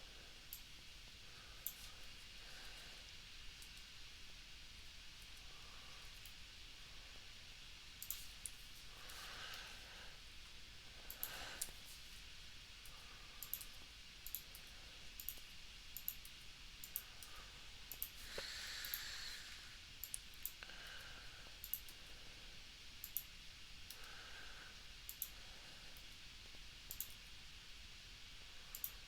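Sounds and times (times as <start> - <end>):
soft hiss: 0.1 - 29.0
computer mouse and keyboard clicks: 8.0 - 9.2, 11.1 - 12.0, 12.9 - 18.2, 20.0 - 20.7, 21.6 - 22.0, 26.9 - 27.2, 28.7 - 29.0.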